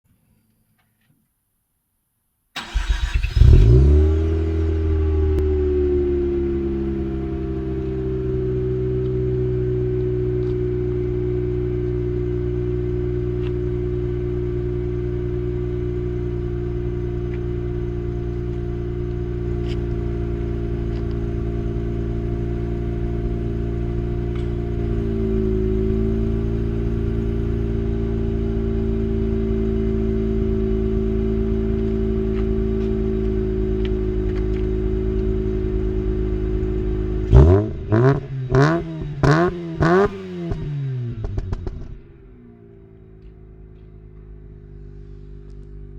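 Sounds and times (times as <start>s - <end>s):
engine rev blip: 37.2s - 42.1s.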